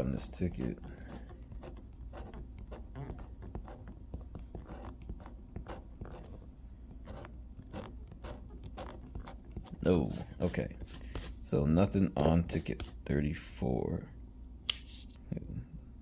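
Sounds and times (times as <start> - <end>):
scraping lottery ticket coating: 0.0 - 11.5.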